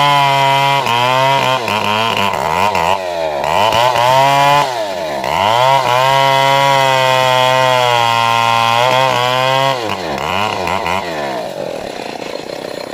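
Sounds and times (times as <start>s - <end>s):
chainsaw revving: 0.0s - 12.9s.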